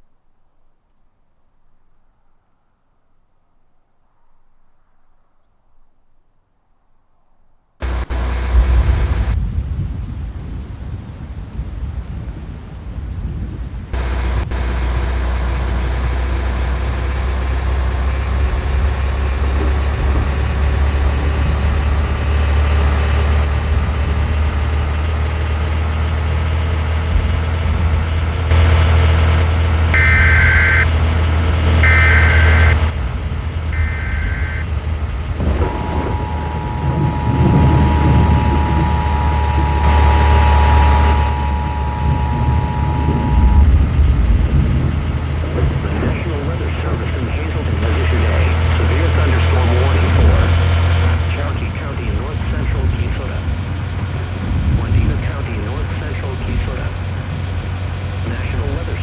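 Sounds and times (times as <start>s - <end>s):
two-tone alarm: 7.8s - 9.4s, 14.0s - 17.4s, 28.5s - 44.2s, 45.5s - 53.4s
vehicle rumbling: 7.8s - 59.0s
data-burst screeches: 28.5s - 31.0s, 31.6s - 33.0s, 33.8s - 34.7s, 35.4s - 43.8s.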